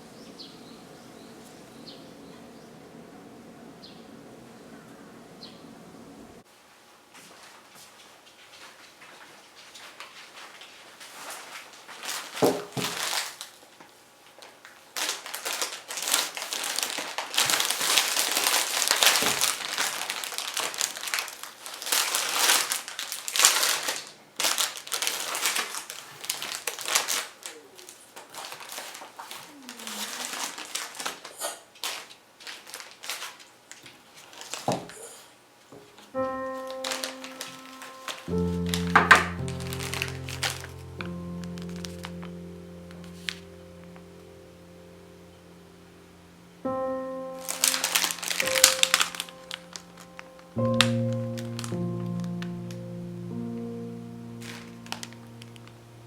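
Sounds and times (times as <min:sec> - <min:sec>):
crinkling and rustling: 0:07.0 - 0:44.4, 0:47.3 - 0:56.0
background music: 0:36.2 - 0:56.0.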